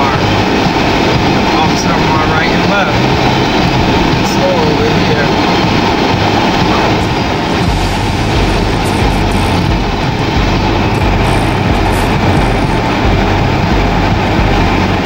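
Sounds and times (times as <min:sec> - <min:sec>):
car engine rumble: 0:00.0 - 0:15.0
road noise: 0:00.0 - 0:15.0.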